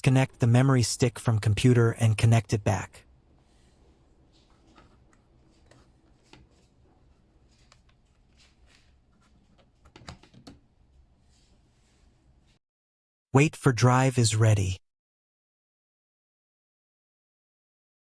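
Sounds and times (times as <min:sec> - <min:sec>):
faint clicks and handling noises: 0:03.4 - 0:12.1.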